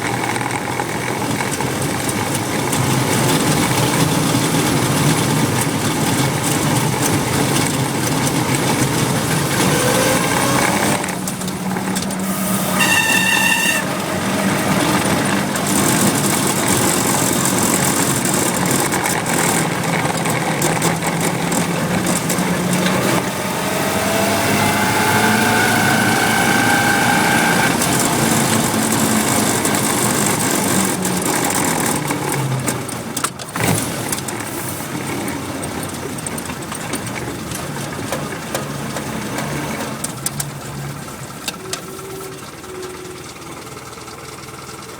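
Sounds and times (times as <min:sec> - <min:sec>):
engine running: 0:00.0 - 0:44.9
high-pitched clutch squeal: 0:09.4 - 0:18.0, 0:23.1 - 0:31.0, 0:41.5 - 0:44.4.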